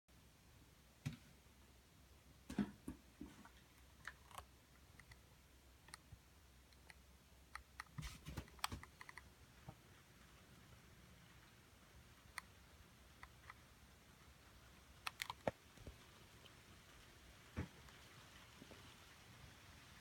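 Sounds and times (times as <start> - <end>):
faint irregular clicks and taps: 2.5 - 9.8, 13.2 - 13.7, 15.0 - 16.6.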